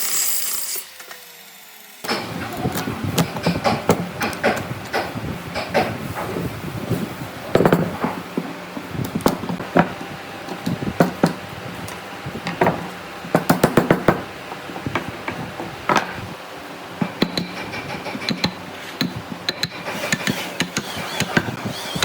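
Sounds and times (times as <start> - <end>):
knocks of wood and hand tools: 2.1 - 6.5, 12.4 - 16.3.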